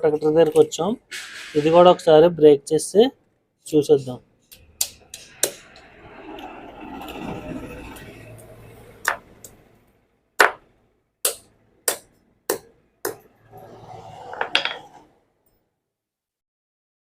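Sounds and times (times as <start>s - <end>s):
hammer strikes: 4.5s - 6.0s, 9.0s - 9.6s, 10.4s - 13.3s.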